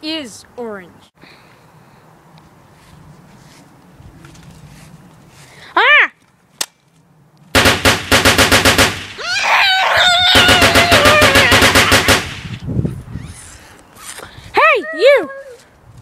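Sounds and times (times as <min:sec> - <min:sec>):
toy gun automatic fire: 0:07.6 - 0:09.2, 0:10.4 - 0:12.6
wavering pitched cry: 0:09.2 - 0:12.1.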